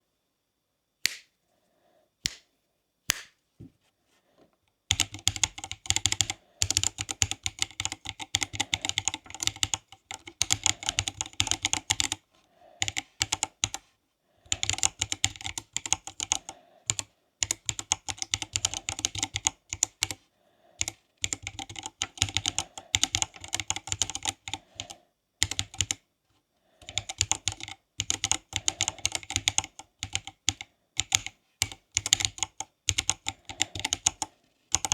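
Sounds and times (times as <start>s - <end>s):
mechanical keyboard typing: 4.9s - 12.2s, 12.8s - 13.8s, 14.5s - 20.2s, 20.8s - 26.0s, 26.8s - 34.9s.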